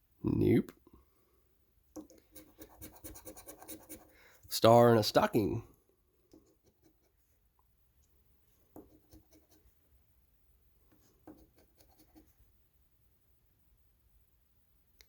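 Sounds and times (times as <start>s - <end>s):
scratching scratch-off ticket: 2.0s - 4.1s.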